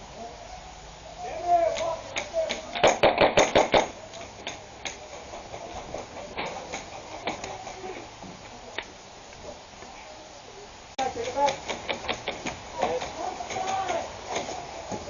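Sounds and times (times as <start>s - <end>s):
low hiss: 0.0s - 15.0s
airsoft gun shots: 1.8s - 4.0s.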